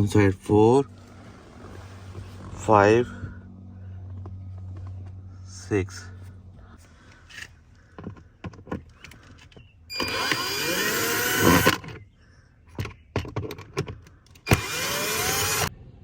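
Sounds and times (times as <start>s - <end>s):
power driver spinning: 7.3s - 12.1s, 14.4s - 15.7s.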